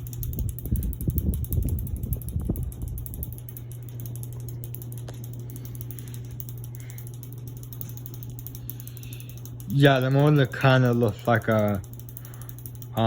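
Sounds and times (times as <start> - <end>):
air buffeting microphone: 0.0 - 3.5
ceiling fan motor hum with ticking: 0.0 - 13.0.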